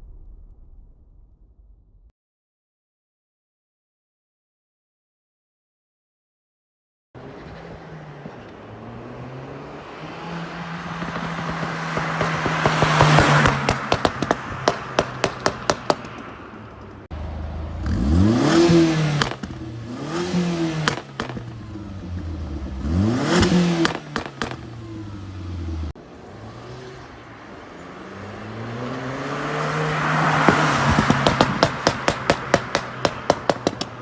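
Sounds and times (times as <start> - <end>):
car engine revving: 7.2 - 34.0
exhaust crackles and pops: 11.0 - 17.0, 18.7 - 19.9, 20.8 - 24.9, 30.5 - 34.0.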